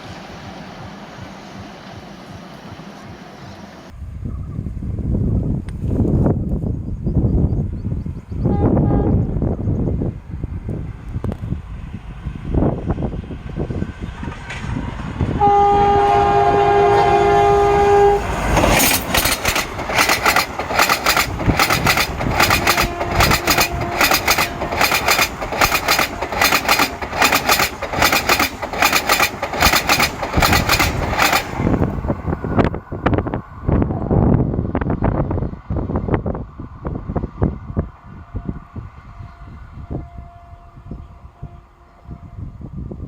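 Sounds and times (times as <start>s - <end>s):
train wheels clattering on track: 0.0s - 3.9s, 13.6s - 32.6s
train horn: 8.5s - 9.4s, 15.3s - 18.8s, 21.6s - 27.0s, 38.2s - 43.0s.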